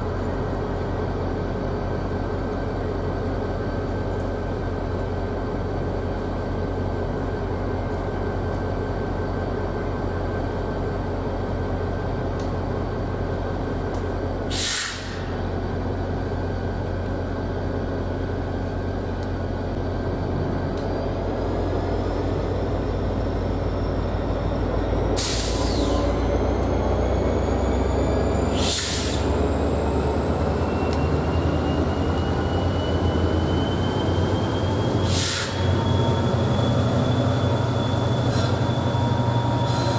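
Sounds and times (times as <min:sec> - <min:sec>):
diesel train engine rumbling: 0:00.0 - 0:39.9
rising train whine: 0:00.0 - 0:39.9
air brake hisses: 0:14.5 - 0:15.4, 0:25.2 - 0:26.1, 0:28.5 - 0:29.4, 0:35.0 - 0:35.7, 0:38.2 - 0:38.7, 0:39.5 - 0:39.9.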